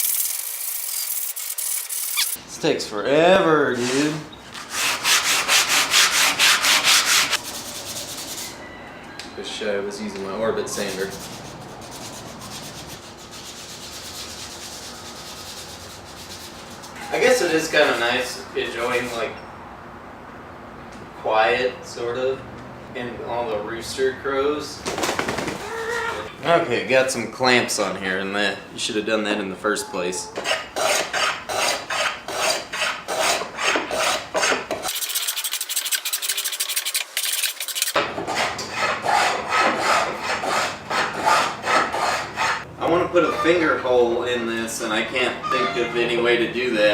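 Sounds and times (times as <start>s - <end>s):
sandpaper rubbing on wood: 0.0s - 2.4s, 3.8s - 8.5s, 10.8s - 19.2s, 34.9s - 38.0s.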